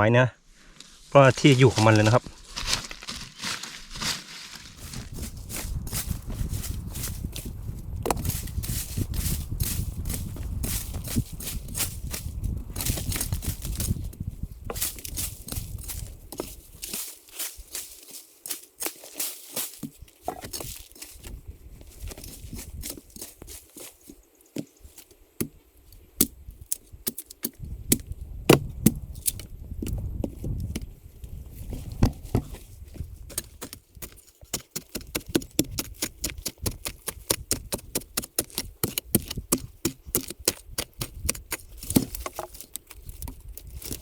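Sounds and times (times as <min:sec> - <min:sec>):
leaves and twigs crackling underfoot: 0:00.4 - 0:37.5, 0:38.3 - 0:44.0
twigs snapping: 0:01.6 - 0:31.3, 0:31.9 - 0:44.0.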